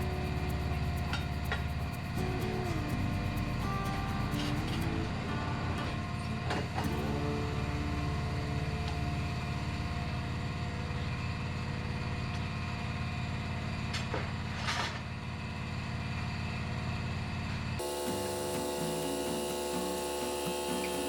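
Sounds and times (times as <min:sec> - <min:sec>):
low machine hum: 0:00.0 - 0:21.0.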